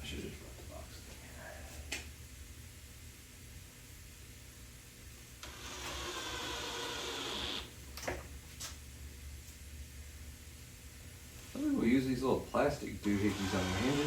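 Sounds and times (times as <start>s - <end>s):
power drill driving screw: 5.4s - 7.7s, 13.2s - 14.0s.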